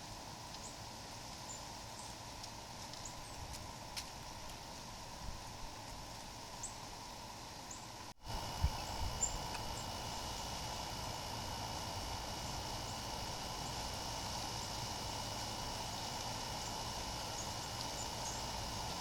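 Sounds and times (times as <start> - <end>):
outdoor background noise: 0.0 - 19.0
steady high whine: 0.0 - 19.0
birds chirping: 3.0 - 4.5, 8.7 - 10.6, 15.9 - 18.7.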